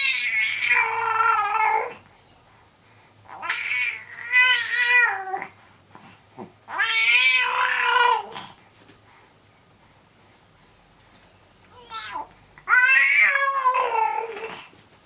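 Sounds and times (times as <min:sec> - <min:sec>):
baby meow-like squeals: 0:03.3 - 0:05.5, 0:06.7 - 0:08.3, 0:11.8 - 0:14.5.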